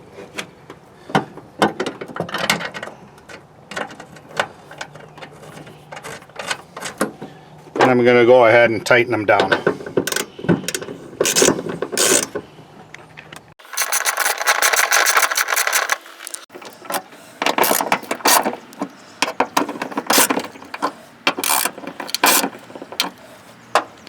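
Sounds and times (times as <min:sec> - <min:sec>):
hand ratchet clicking: 0:11.2 - 0:12.3, 0:13.6 - 0:19.4, 0:20.0 - 0:23.2.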